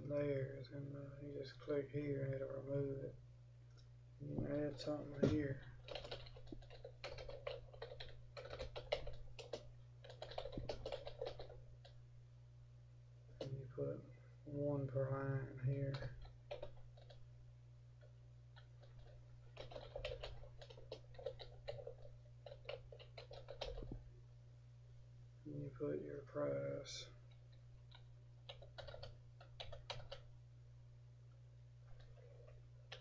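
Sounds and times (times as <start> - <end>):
low steady hum: 0.0 - 33.0
computer keyboard typing: 4.8 - 12.0, 15.9 - 17.2, 18.0 - 24.0, 27.3 - 30.3.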